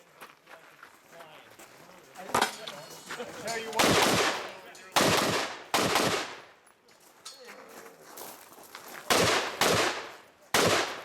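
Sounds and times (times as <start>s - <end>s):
rifle shots with echo: 3.8s - 6.5s, 9.1s - 11.0s.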